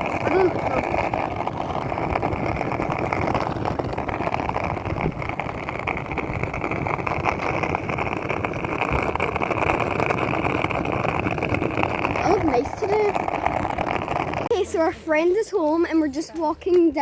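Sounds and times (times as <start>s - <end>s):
skateboard wheels rolling on pavement: 0.0s - 17.0s.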